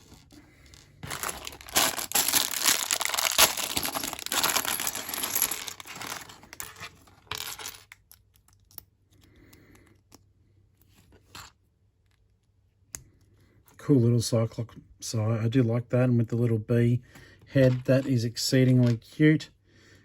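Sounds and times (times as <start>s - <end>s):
plastic packet tearing and crinkling: 1.0s - 6.3s.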